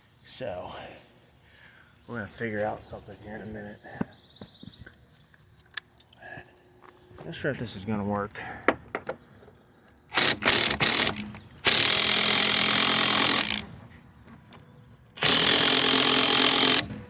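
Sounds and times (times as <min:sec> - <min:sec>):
handheld power tool running: 0:10.1 - 0:13.8, 0:15.2 - 0:17.0.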